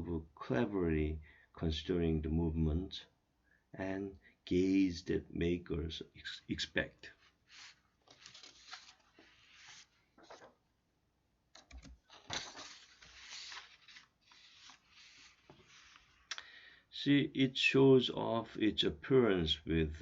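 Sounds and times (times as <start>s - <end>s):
faint rustling: 7.1s - 10.6s.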